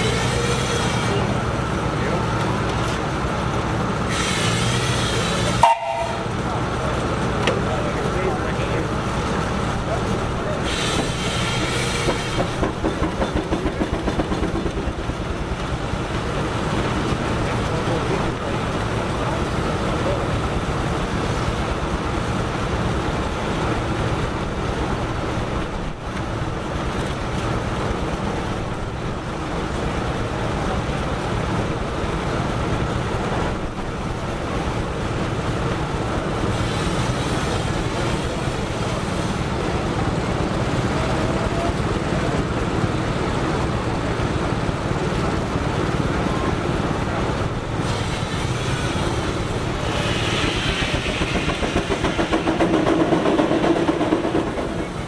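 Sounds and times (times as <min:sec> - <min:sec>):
sawmill machinery running: 0:00.0 - 0:55.0
steam engine exhaust chuffing: 0:33.5 - 0:55.0.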